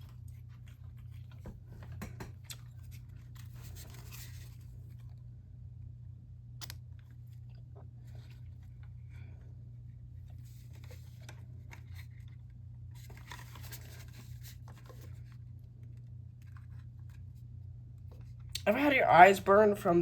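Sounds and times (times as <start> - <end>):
low electrical hum: 0.0 - 20.0.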